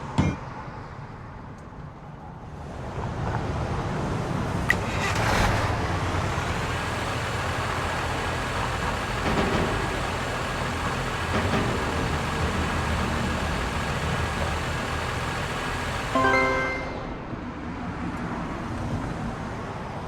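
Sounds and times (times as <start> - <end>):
engine rumble: 1.6 - 16.2.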